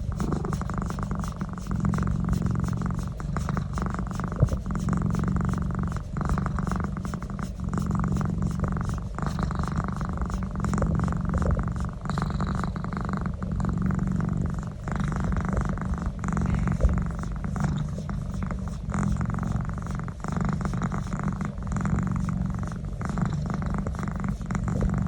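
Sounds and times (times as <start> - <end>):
cat purring: 0.0 - 25.0.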